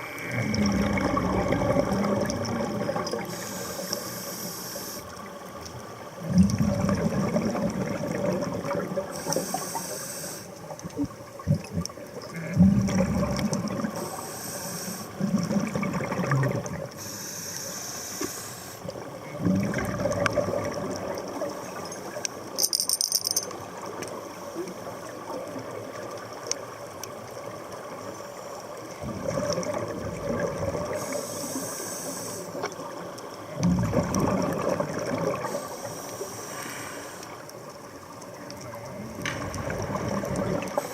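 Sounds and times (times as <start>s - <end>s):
exhaled bubbles rumbling: 0.3s - 3.4s, 6.0s - 9.2s, 10.8s - 14.0s, 15.2s - 17.0s, 18.9s - 21.8s, 28.9s - 31.1s, 32.8s - 35.6s, 38.3s - 40.9s
regulator hissing inhalations: 3.3s - 5.2s, 9.1s - 10.6s, 14.0s - 15.2s, 17.0s - 18.9s, 30.9s - 32.6s, 35.4s - 37.4s.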